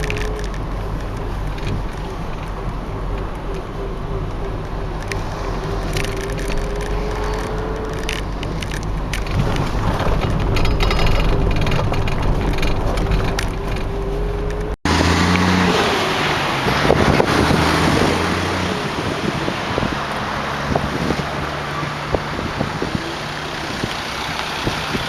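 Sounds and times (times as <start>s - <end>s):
low rumble: 0.0s - 14.8s
wind noise on microphone: 0.0s - 14.8s, 16.5s - 25.0s.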